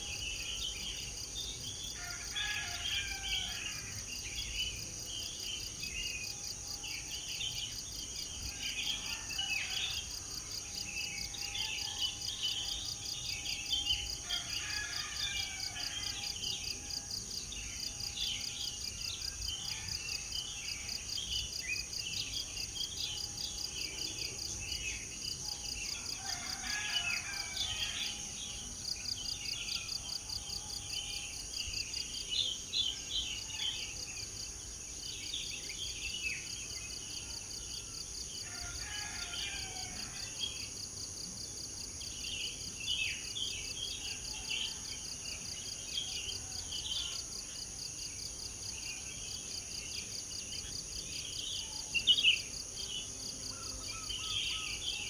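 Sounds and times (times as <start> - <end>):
insect drone with pulsing trill: 0.0 - 55.0.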